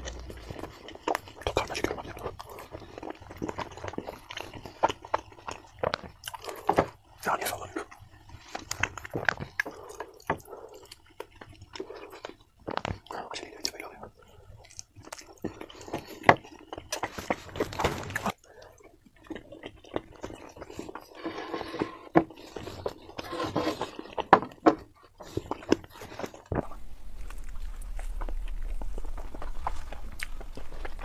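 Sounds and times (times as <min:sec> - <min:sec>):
wet chewing and biting: 0:00.0 - 0:31.0
low steady hum: 0:25.5 - 0:31.0.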